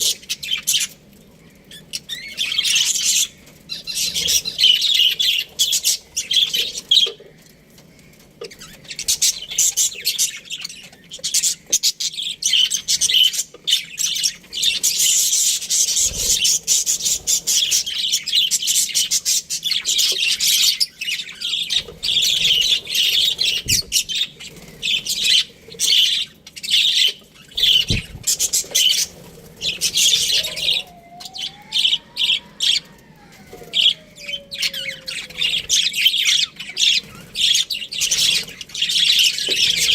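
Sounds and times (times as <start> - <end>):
budgerigars chirping: 8.4 - 32.9, 33.8 - 39.9.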